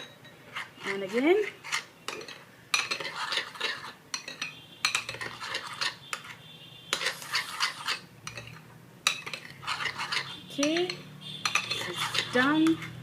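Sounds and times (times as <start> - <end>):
spoon stirring batter in bowl: 0.0 - 13.0.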